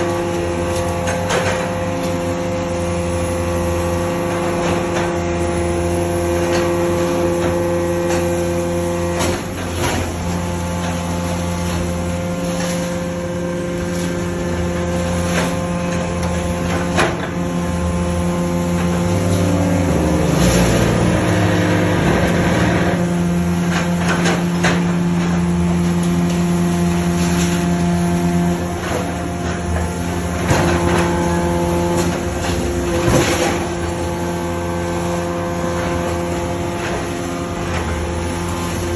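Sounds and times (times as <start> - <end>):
hydraulic machine hum: 0.0 - 38.9
scrap metal clanks and knocks: 18.7 - 38.8.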